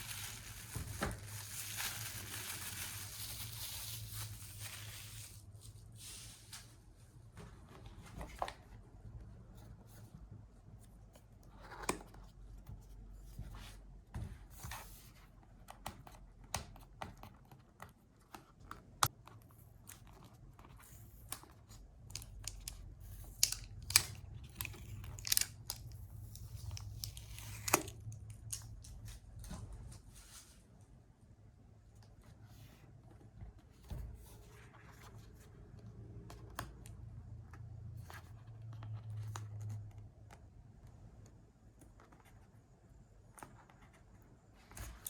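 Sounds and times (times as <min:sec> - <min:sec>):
wrapping rustling and tearing: 0:00.0 - 0:06.8, 0:22.0 - 0:29.5.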